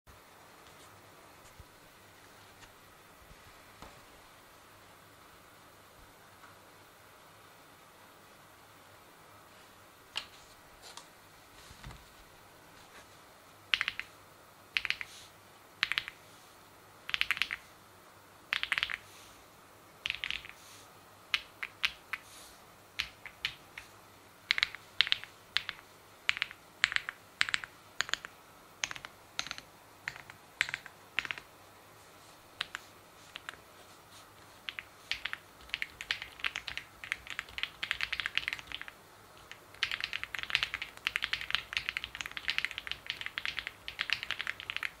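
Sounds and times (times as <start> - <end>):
mechanical keyboard typing: 13.7 - 14.2, 14.8 - 15.1, 15.8 - 16.2, 17.1 - 17.6, 18.5 - 19.1, 20.0 - 20.6, 21.3 - 22.2, 23.0 - 23.9, 24.5 - 31.5, 32.6 - 33.6, 34.6 - 45.0.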